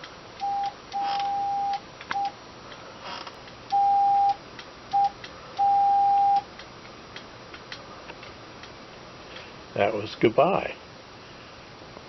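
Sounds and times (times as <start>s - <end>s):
morse code beeps: 0.4s - 2.4s, 3.7s - 6.4s.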